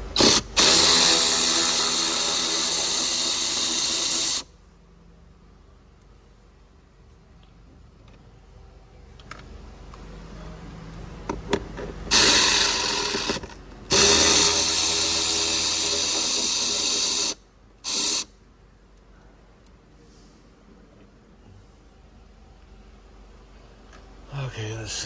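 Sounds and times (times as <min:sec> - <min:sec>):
power tool running: 0:00.0 - 0:04.5, 0:12.1 - 0:18.3.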